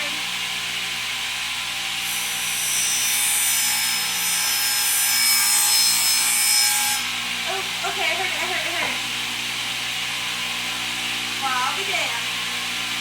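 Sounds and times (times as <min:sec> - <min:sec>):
table saw running: 0:00.0 - 0:13.0
saw blade cutting wood: 0:02.0 - 0:07.1.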